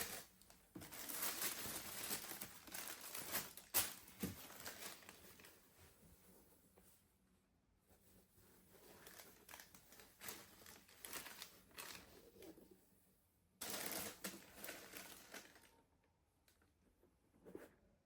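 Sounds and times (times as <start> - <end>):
packaging rustling and crinkling: 0.0 - 5.6, 8.8 - 12.5, 13.6 - 15.8.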